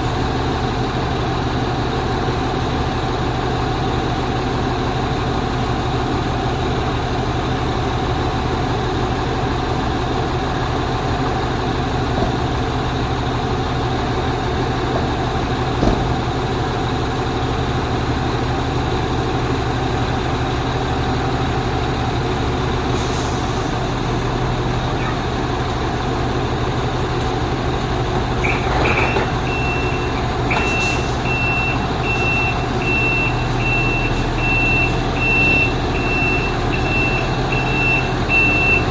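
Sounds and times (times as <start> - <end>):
truck engine idling: 0.0 - 38.9
reversing alarm beeping: 28.5 - 38.9.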